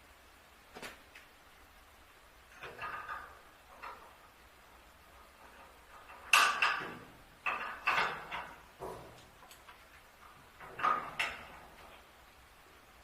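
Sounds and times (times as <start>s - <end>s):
metal parts knocking and clinking: 5.2s - 9.7s.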